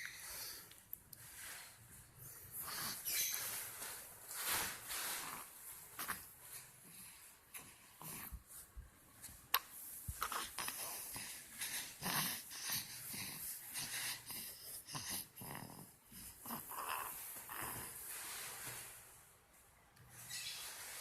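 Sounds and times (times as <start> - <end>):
child snoring: 14.9 - 18.0.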